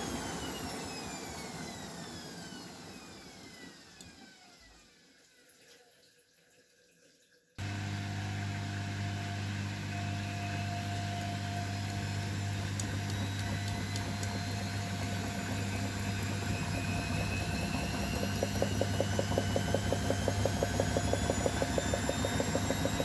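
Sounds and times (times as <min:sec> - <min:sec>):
washing machine drum motor whine: 0:00.0 - 0:04.6, 0:07.6 - 0:23.0
fast pulsing drum beat: 0:15.7 - 0:23.0.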